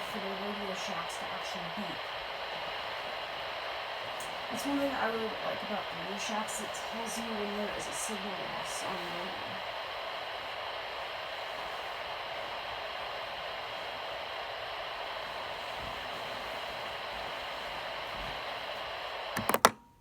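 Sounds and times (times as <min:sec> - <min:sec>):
radio static hiss: 0:00.0 - 0:19.7
sharp clicks: 0:19.3 - 0:19.8.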